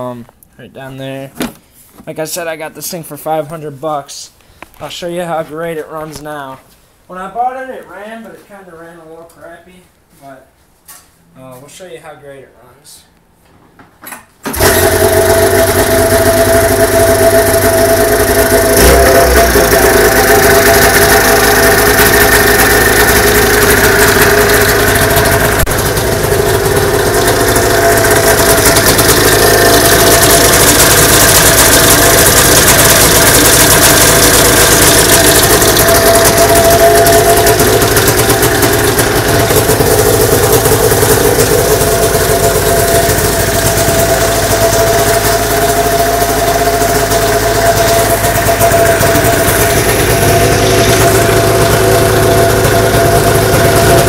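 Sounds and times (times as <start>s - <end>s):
two-stroke engine idling: 14.5s - 54.0s.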